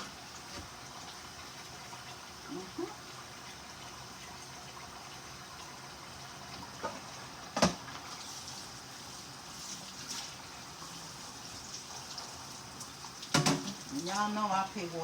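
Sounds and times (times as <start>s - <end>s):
tap running into sink: 6.8s - 8.0s, 13.2s - 13.8s.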